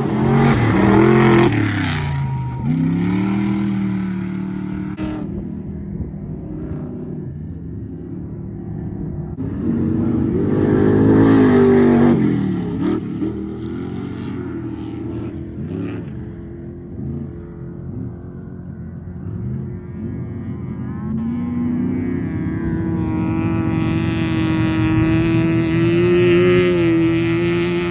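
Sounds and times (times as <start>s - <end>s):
race truck engine passing at speed: 0.0s - 5.4s
distant engines revving: 0.0s - 27.9s.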